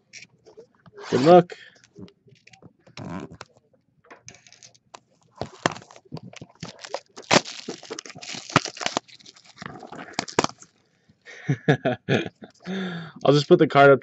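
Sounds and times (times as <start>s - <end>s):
plastic wrapping tearing and crinkling: 5.4s - 10.8s.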